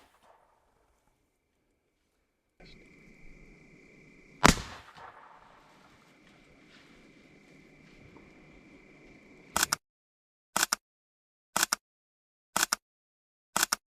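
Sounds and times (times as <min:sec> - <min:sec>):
faint outdoor ambience: 0:00.0 - 0:09.8
sharp double click: 0:09.6 - 0:09.8, 0:10.6 - 0:10.8, 0:11.6 - 0:11.8, 0:12.6 - 0:12.8, 0:13.6 - 0:13.8.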